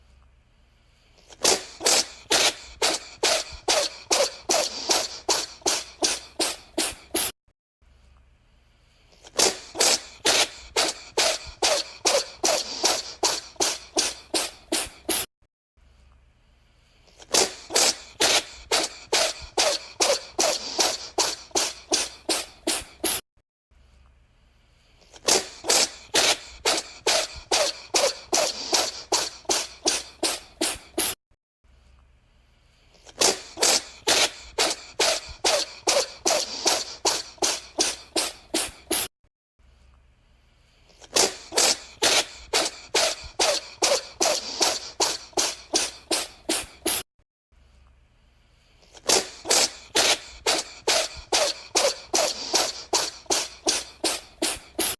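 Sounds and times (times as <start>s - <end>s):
cat sneezing: 1.2s - 7.4s, 9.2s - 15.3s, 17.1s - 23.2s, 25.0s - 31.2s, 33.0s - 39.1s, 40.9s - 47.1s, 48.8s - 54.9s.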